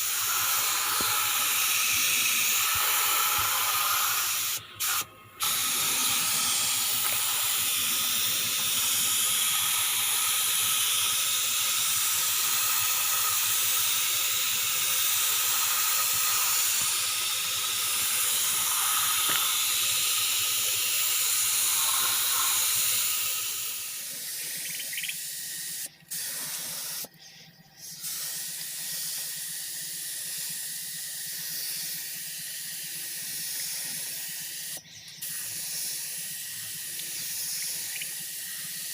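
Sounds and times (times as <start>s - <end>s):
paint spray hissing: 0.0s - 38.9s.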